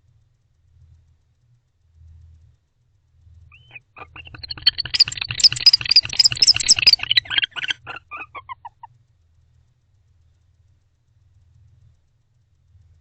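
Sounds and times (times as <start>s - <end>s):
owls twittering calls: 3.6s - 8.9s.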